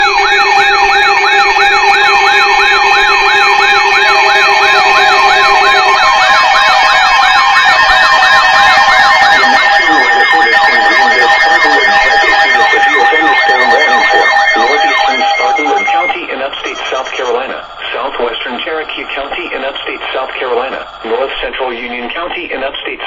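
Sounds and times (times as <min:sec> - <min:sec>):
siren-like sweeping tone: 0:00.0 - 0:19.4
steady alarm tones: 0:00.0 - 0:22.6
warbling tone: 0:09.3 - 0:21.4.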